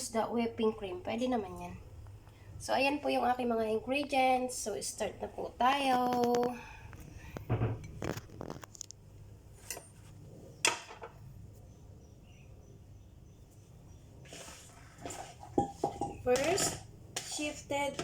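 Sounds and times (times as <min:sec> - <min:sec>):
low room hum: 0:00.0 - 0:18.0
kitchen utensils clinking: 0:15.0 - 0:18.0.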